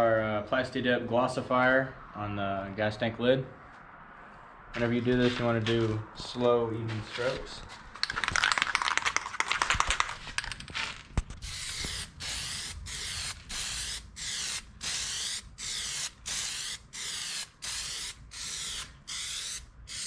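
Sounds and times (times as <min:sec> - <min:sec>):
aerosol can rattle: 0:08.0 - 0:13.2
aerosol can spraying: 0:11.4 - 0:20.0.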